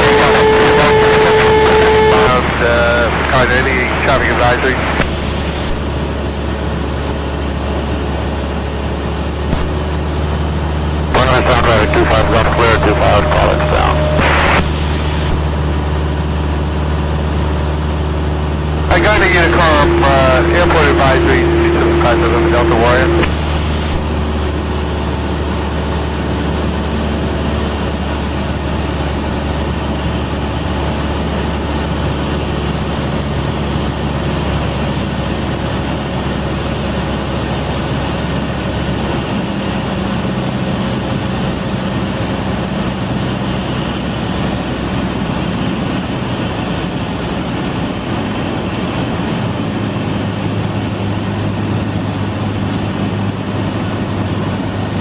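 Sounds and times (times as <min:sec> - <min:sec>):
propeller plane engine drone: 0:00.0 - 0:55.0.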